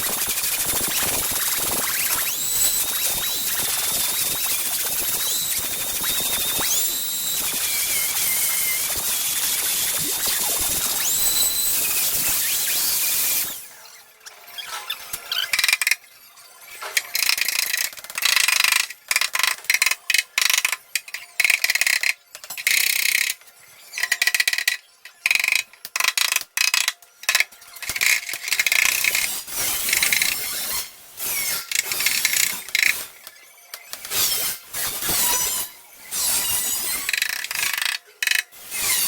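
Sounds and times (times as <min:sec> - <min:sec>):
welding crackle bursts: 0:00.0 - 0:13.7.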